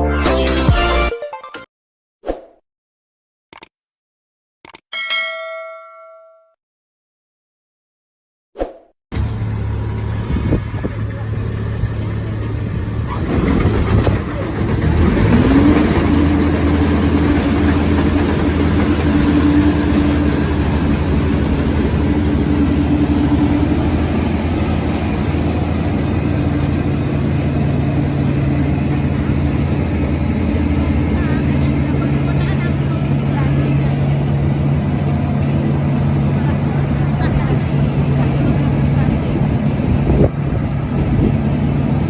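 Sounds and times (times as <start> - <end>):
harvester engine drone: 9.1 - 42.0.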